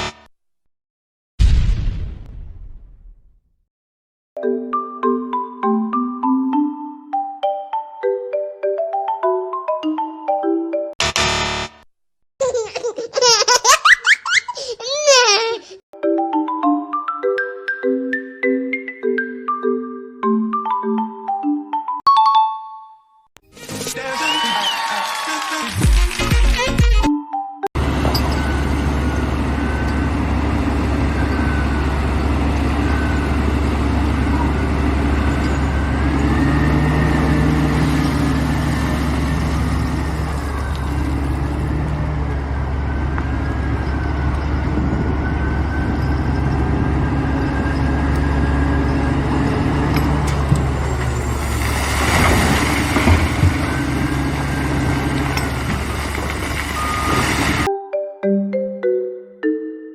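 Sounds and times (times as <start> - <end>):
heavy engine running: 27.8 - 57.7.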